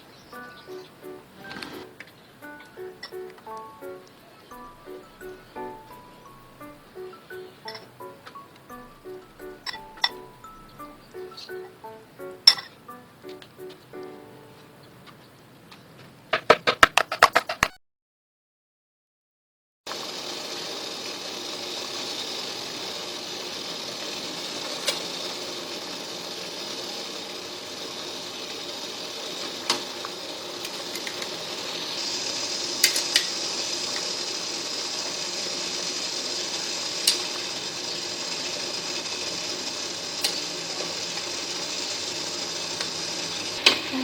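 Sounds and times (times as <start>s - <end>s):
food cooking hiss: 0.0s - 14.5s, 19.9s - 44.0s
utensils clicking on cookware: 7.6s - 8.4s, 9.0s - 11.8s, 12.4s - 12.8s, 24.1s - 44.0s.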